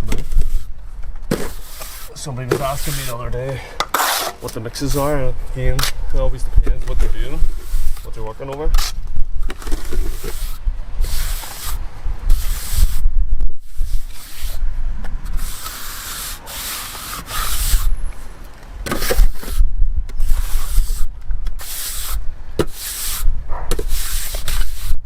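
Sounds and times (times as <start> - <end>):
steel trowel scraping render: 1.3 - 5.2, 9.7 - 13.0, 13.6 - 14.6, 15.3 - 18.0, 18.9 - 25.0.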